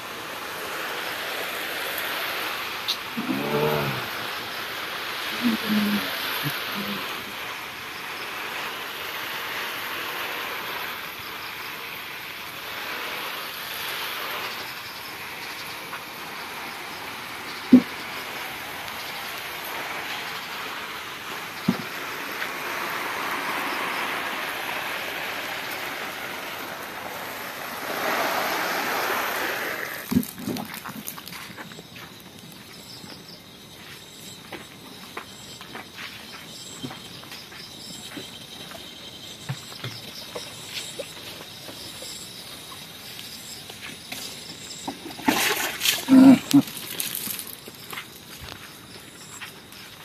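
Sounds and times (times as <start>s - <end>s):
running water rushing: 0.0s - 32.6s, 34.1s - 50.0s
faint rural background: 0.0s - 50.0s
low voice-like sound: 3.2s - 4.1s, 5.3s - 7.2s.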